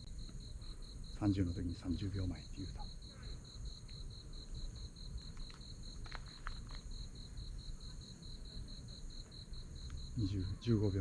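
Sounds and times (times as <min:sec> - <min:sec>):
insect chirping: 0:00.0 - 0:11.0.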